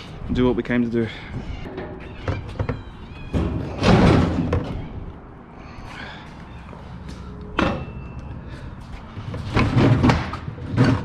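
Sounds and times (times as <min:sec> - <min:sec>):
door slamming: 0:02.0 - 0:04.9.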